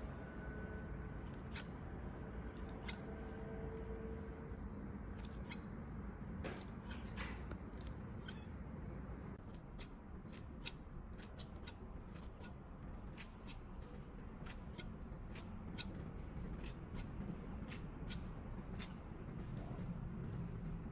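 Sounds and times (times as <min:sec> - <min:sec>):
scissors snipping: 0:01.3 - 0:01.7, 0:09.4 - 0:13.7, 0:14.4 - 0:16.0, 0:16.6 - 0:19.0.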